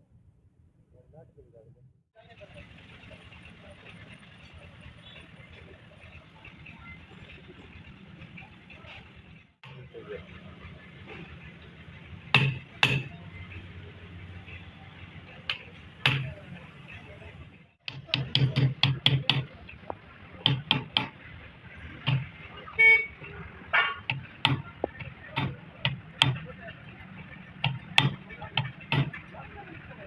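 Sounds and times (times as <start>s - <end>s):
sharp knocks and taps: 17.8s - 21.2s, 24.0s - 26.5s, 27.6s - 29.2s.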